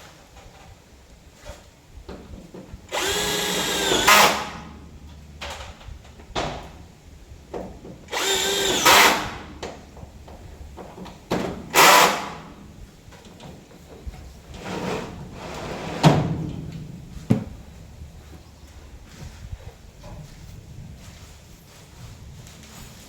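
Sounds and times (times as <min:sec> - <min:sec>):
power drill whining: 0:02.9 - 0:04.8, 0:08.1 - 0:09.6, 0:11.7 - 0:12.6.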